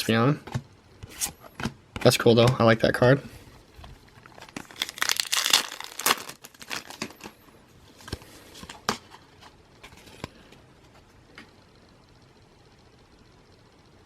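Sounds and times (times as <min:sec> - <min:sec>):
packaging and cards rustling: 0:03.7 - 0:10.4
foil wrapper crinkling and tearing: 0:04.2 - 0:07.3.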